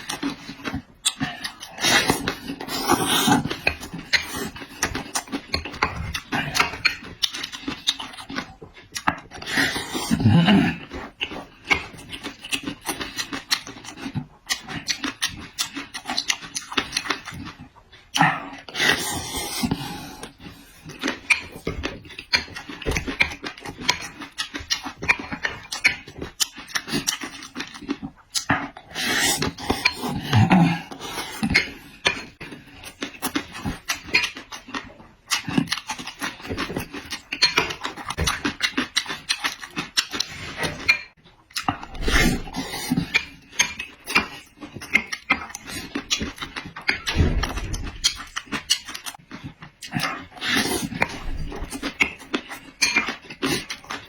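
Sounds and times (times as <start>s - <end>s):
chewing and crunching food: 0.0s - 54.0s.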